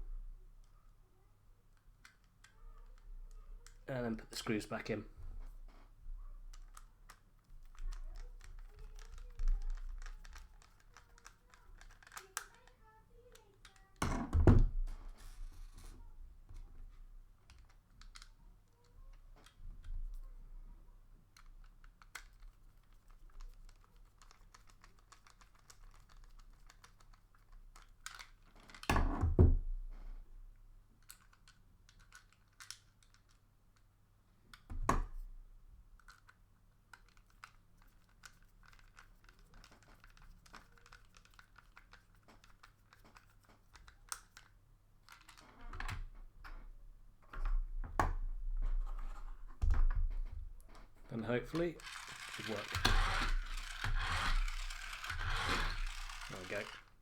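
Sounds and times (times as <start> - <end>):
screwdriver clicks and ticks: 6.7 - 12.7, 51.5 - 57.0.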